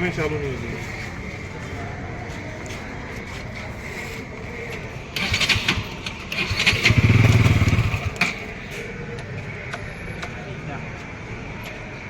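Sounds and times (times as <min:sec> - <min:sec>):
motorcycle engine cranking: 0:05.1 - 0:08.6.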